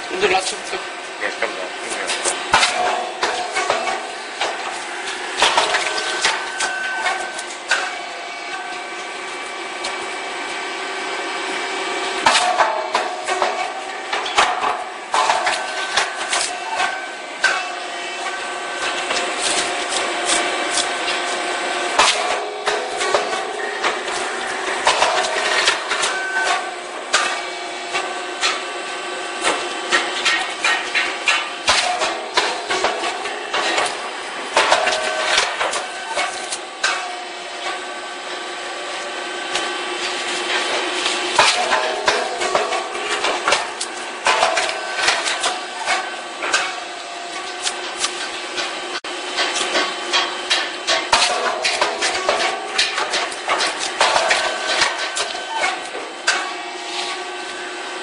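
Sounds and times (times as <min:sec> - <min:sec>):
machine humming: 0:00.0 - 0:58.0
mechanical knocks and clacks: 0:39.5 - 0:57.3
machine clicks and knocks: 0:49.4 - 0:56.6.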